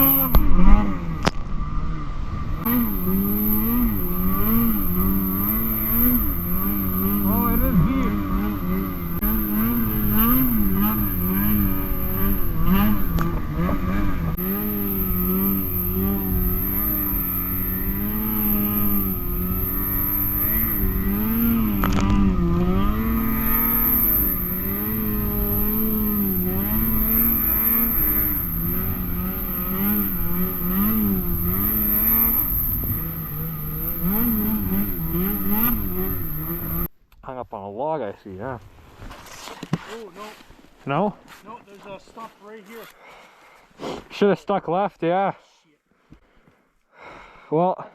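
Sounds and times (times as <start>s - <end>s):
snowmobile engine revving: 0.0s - 36.9s.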